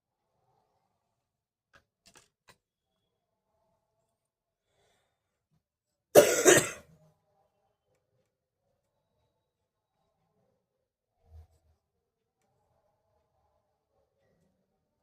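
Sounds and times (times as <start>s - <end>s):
person coughing: 6.2s - 6.8s.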